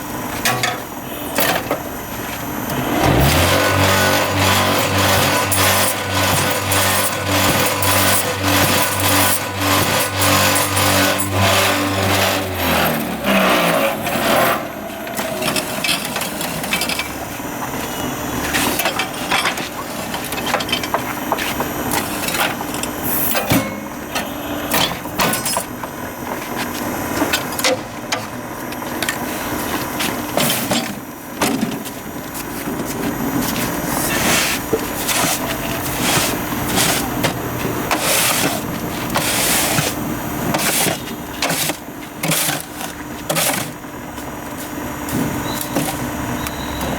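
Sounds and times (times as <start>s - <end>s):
machine hum: 0.0s - 21.8s.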